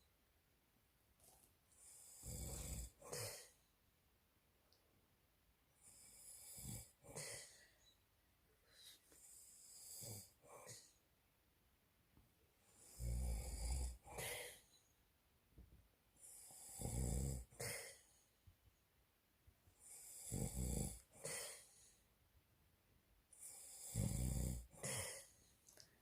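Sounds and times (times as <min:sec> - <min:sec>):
man snoring: 0:01.8 - 0:03.5, 0:05.8 - 0:07.6, 0:09.3 - 0:10.8, 0:12.8 - 0:14.6, 0:16.2 - 0:18.0, 0:19.8 - 0:21.8, 0:23.4 - 0:25.3.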